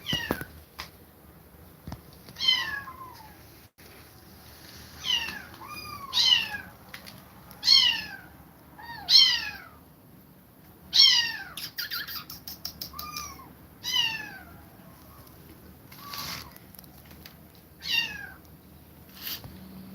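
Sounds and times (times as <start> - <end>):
kittens meowing: 5.0 - 6.8, 7.6 - 9.8, 10.9 - 16.6, 17.8 - 18.5.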